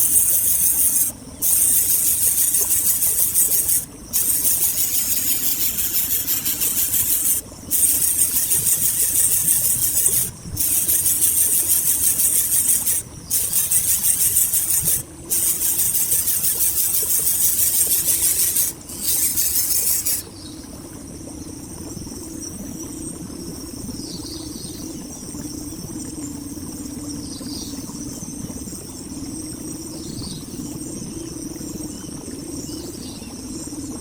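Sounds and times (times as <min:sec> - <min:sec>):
loud insect buzzing: 0:00.0 - 0:20.2
faint high insect drone: 0:00.0 - 0:20.3.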